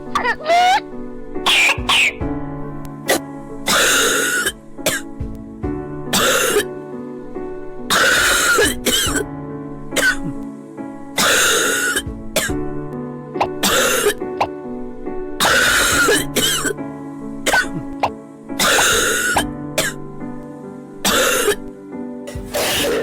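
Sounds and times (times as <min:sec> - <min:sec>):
background music: 0:00.0 - 0:23.0
person coughing: 0:00.2 - 0:00.8, 0:01.5 - 0:02.2, 0:06.2 - 0:06.7, 0:13.6 - 0:14.2, 0:15.4 - 0:16.8, 0:18.6 - 0:20.0.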